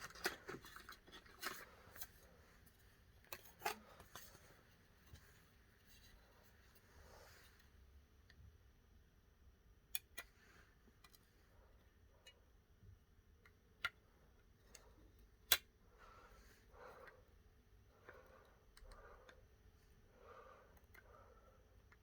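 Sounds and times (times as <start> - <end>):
faint handling rustles: 0.0 - 7.8.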